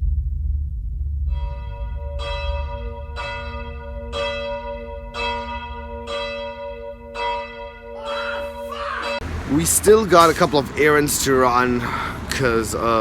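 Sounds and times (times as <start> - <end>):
steady low rumble: 0.0 - 8.0
church bell tolling: 1.3 - 9.6.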